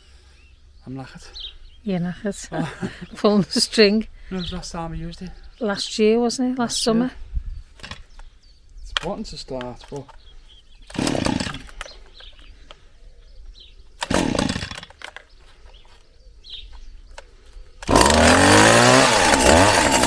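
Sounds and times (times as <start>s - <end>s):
hedge trimmer engine revving: 7.8s - 8.0s, 10.9s - 11.9s, 14.0s - 15.1s, 17.8s - 20.0s
starter cord pulls: 7.8s - 8.3s, 10.8s - 12.4s, 14.0s - 16.0s, 17.1s - 20.0s.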